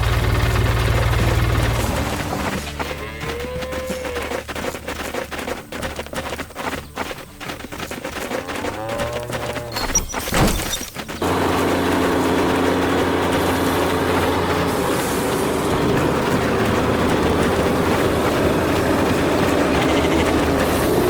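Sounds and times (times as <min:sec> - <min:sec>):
heavy diesel machinery running: 0:00.0 - 0:05.4, 0:09.8 - 0:21.0.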